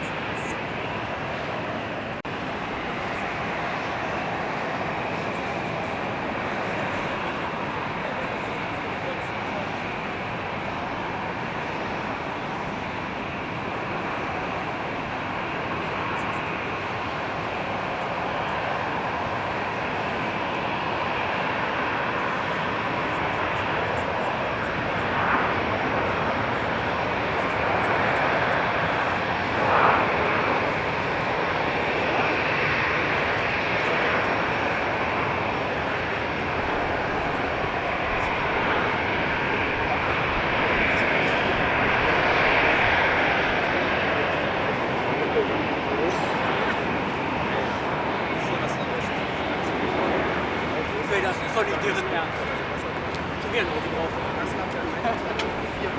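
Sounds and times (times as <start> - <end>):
jet engines rushing: 0.0 - 55.9.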